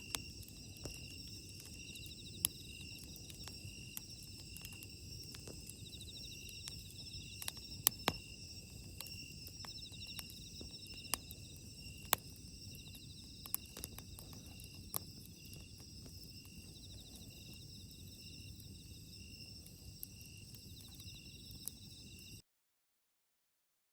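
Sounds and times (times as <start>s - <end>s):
bonfire crackling and popping: 0.0s - 22.4s
insects chirping: 0.0s - 22.4s.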